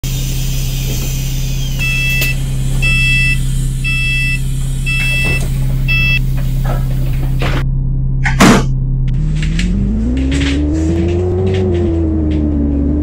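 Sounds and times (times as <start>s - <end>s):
bus engine humming: 0.0s - 13.0s
reversing alarm beeping: 0.2s - 6.6s.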